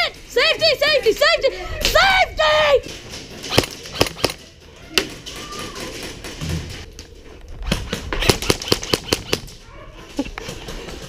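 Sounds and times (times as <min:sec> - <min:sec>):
airsoft guns firing: 0:03.4 - 0:05.2, 0:07.7 - 0:09.6.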